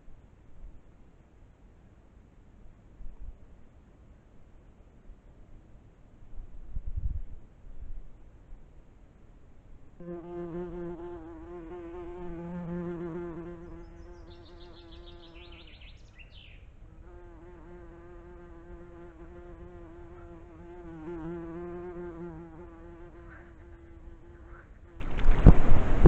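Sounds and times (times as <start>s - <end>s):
flying insect buzzing: 10.0s - 15.8s, 16.9s - 25.4s.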